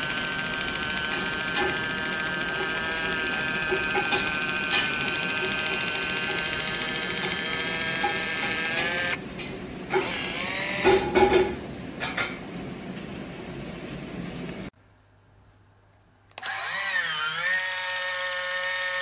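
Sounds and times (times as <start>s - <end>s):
electric can opener whining: 0.0s - 9.2s, 9.9s - 11.3s, 16.4s - 19.0s.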